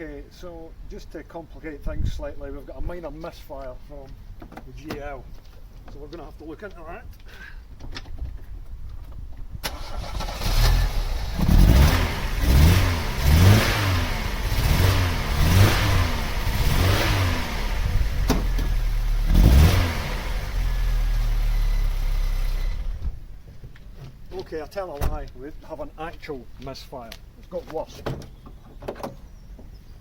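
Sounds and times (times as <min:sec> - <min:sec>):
car engine starting and revving: 0:09.6 - 0:23.1.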